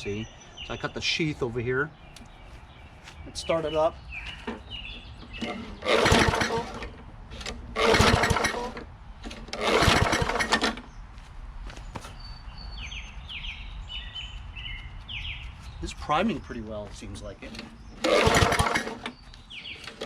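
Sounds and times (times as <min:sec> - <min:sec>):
recoil starter pulls: 0:05.3 - 0:10.9, 0:17.4 - 0:20.0
engine turning over: 0:05.4 - 0:10.9, 0:17.5 - 0:20.0.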